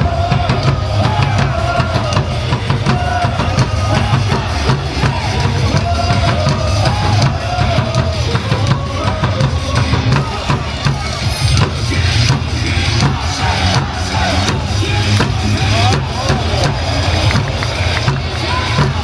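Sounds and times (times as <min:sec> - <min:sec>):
cheer music with heavy bass drum: 0:00.0 - 0:19.0.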